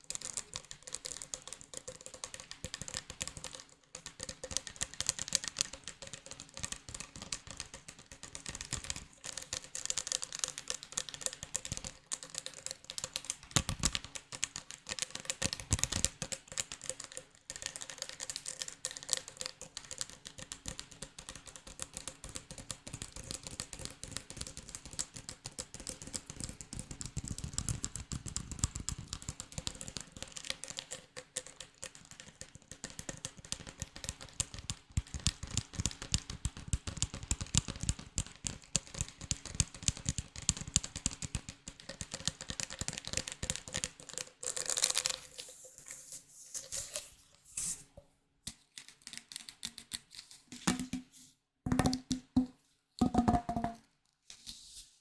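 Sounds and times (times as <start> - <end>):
tapping and clicking on hard object: 48.5 - 51.1, 51.7 - 53.9.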